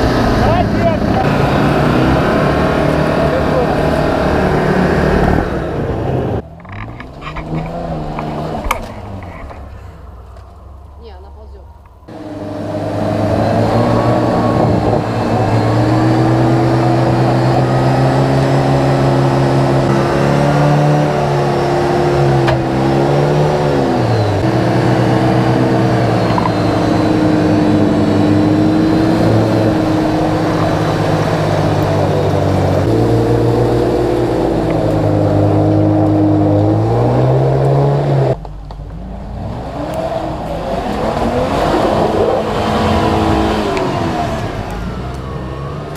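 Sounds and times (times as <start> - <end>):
engine revving under load: 0.0 - 45.9.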